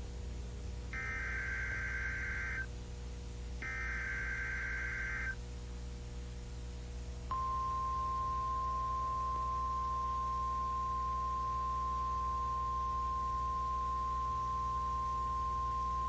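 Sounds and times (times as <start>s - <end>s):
low receiver hum: 0.0s - 16.0s
steady warning alarm tone: 1.0s - 2.7s, 3.6s - 5.4s, 7.3s - 16.0s.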